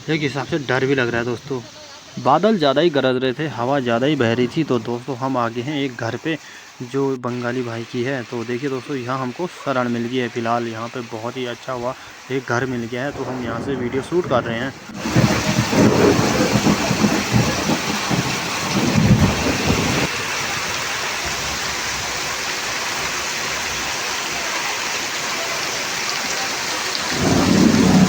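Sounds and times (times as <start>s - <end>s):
heavy rain pouring: 0.0s - 28.0s
thunder rumbling: 12.6s - 20.1s, 27.1s - 28.0s.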